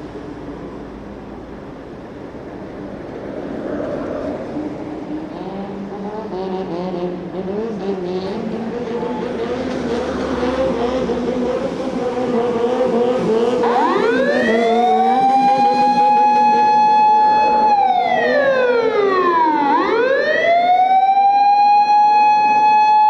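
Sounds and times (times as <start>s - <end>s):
fire engine revving: 4.2s - 23.0s.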